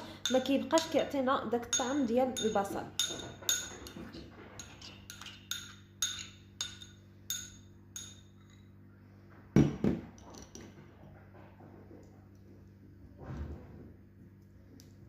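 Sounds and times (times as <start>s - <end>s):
utensil tapping glass bowl: 0.2s - 1.0s, 1.6s - 8.6s.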